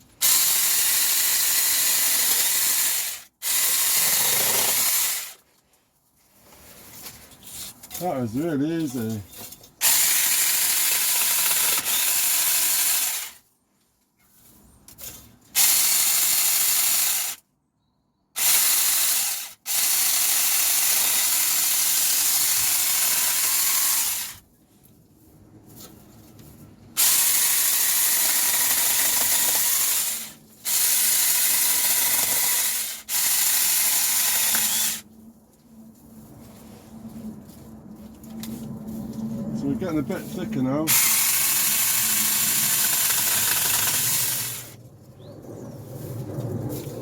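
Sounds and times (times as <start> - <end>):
electric chainsaw running: 0.2 - 5.4, 9.8 - 13.4, 15.6 - 17.4, 18.4 - 24.3, 27.0 - 35.0, 40.9 - 44.8.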